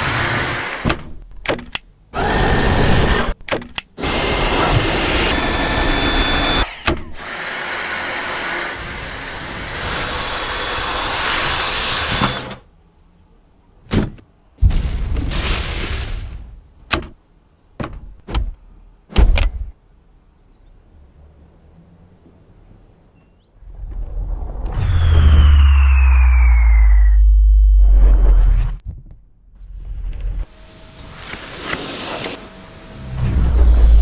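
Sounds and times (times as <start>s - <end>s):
vacuum cleaner motor whining: 4.0s - 8.8s
clicks and thunks: 16.8s - 17.2s, 17.8s - 19.8s.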